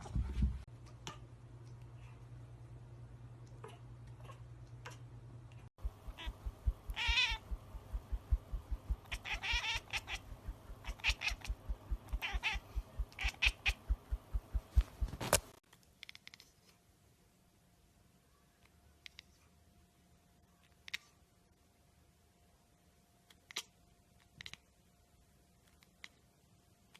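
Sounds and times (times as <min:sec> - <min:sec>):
steady low thumping: 0:05.8 - 0:15.3
kitten mewing: 0:06.1 - 0:08.2, 0:08.9 - 0:14.1.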